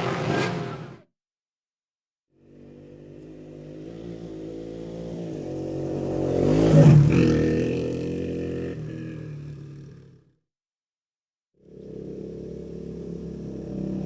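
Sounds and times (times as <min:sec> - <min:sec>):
motorcycle passing by: 0:00.0 - 0:01.0, 0:02.4 - 0:10.3, 0:11.6 - 0:14.0.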